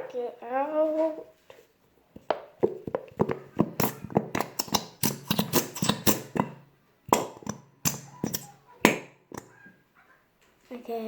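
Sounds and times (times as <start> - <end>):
glue bottle squelching blurts: 2.6 - 9.8.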